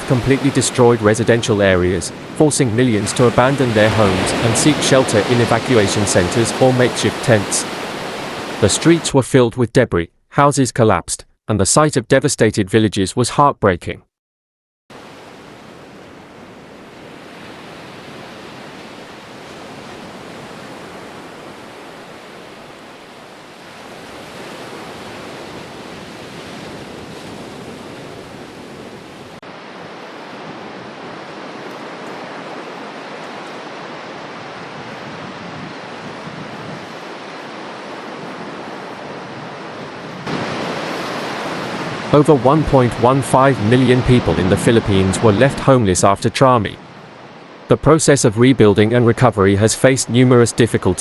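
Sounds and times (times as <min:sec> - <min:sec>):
rushing water: 0:00.0 - 0:09.1, 0:14.9 - 0:46.2
wind: 0:00.0 - 0:09.2, 0:14.9 - 0:51.0.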